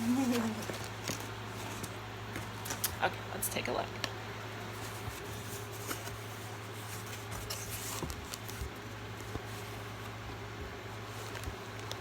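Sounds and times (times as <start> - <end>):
packaging rustling: 0.0 - 3.0, 4.8 - 10.2, 11.0 - 12.0
steady low hum: 0.0 - 12.0.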